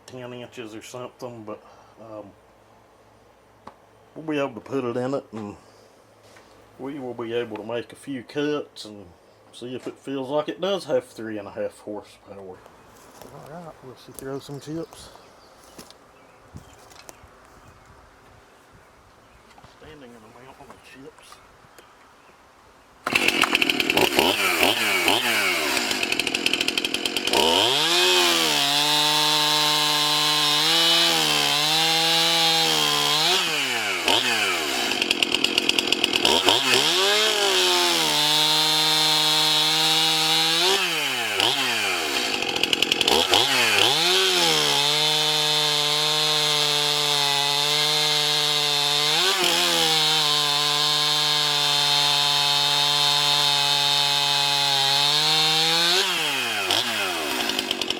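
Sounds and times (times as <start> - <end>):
chainsaw cutting through log: 23.0 - 57.9.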